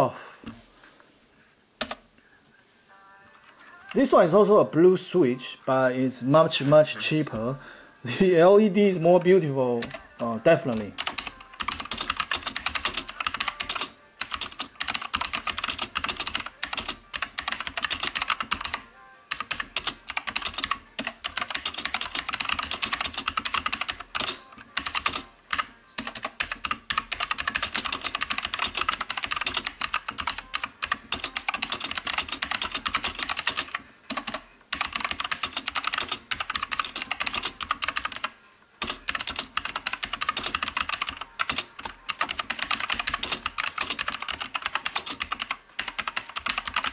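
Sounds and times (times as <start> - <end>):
fast clicky keyboard typing: 10.7 - 46.9.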